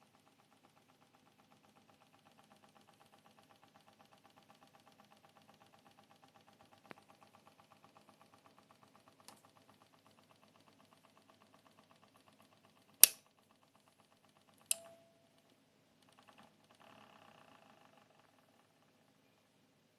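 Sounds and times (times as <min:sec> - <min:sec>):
loud sharp click: 0:14.7 - 0:15.0.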